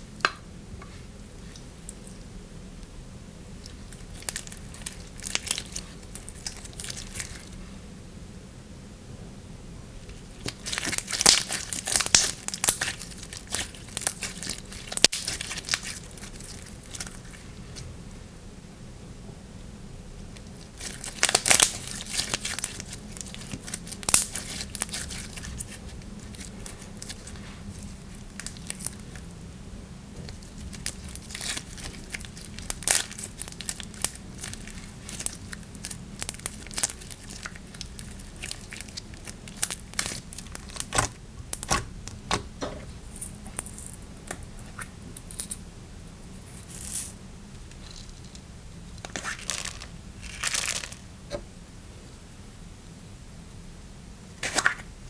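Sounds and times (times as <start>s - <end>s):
slime crackling and popping: 3.6s - 7.5s, 10.4s - 17.9s, 20.4s - 29.3s, 30.2s - 42.4s, 54.4s - 54.9s.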